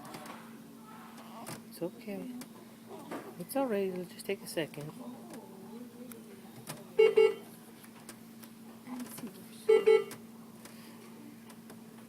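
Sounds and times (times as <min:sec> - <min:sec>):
low electrical hum: 0:00.0 - 0:12.0
equipment alarm double beep: 0:07.0 - 0:07.4, 0:09.7 - 0:10.1.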